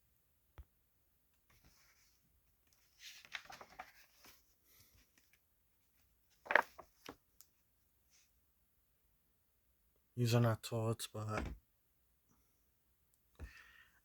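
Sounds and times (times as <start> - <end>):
paper pages rustling: 1.5 - 5.4, 6.0 - 7.2.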